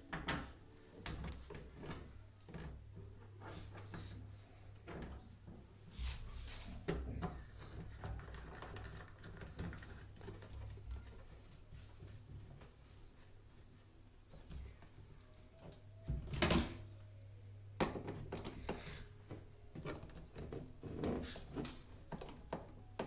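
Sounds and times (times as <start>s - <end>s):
clicks and rattles of a pump: 6.8s - 12.7s.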